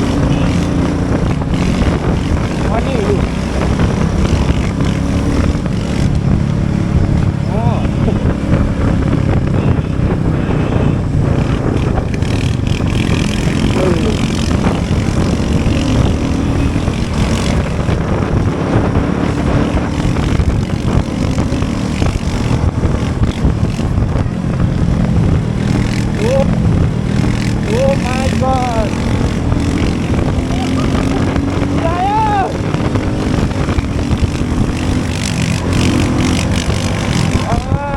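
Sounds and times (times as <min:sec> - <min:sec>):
loud wind noise: 0:00.0 - 0:37.9
road noise: 0:00.0 - 0:37.9
vehicle engine cruising: 0:00.0 - 0:37.9.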